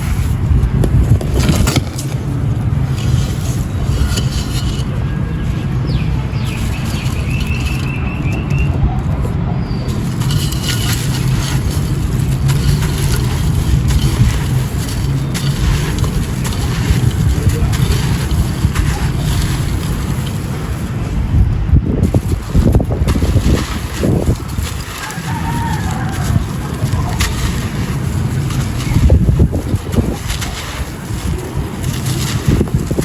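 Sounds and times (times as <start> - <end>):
concrete chunks crumbling: 0.0 - 8.4, 9.9 - 21.2, 22.0 - 33.0
wind rumble on microphone: 0.0 - 33.0.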